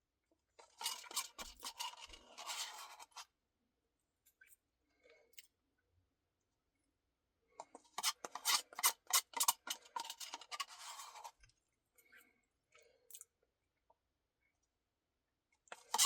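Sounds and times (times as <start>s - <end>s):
eating ice cream clicks and scrapes: 7.6s - 12.3s, 15.7s - 16.0s.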